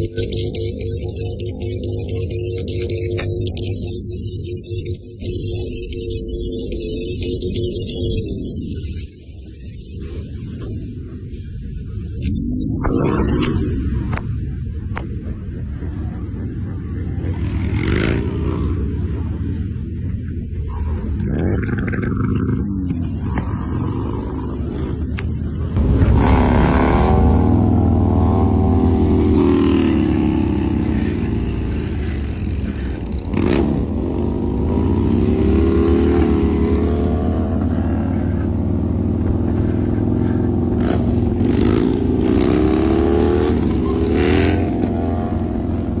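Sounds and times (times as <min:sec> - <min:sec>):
motorcycle engine revving: 0:21.2 - 0:46.0.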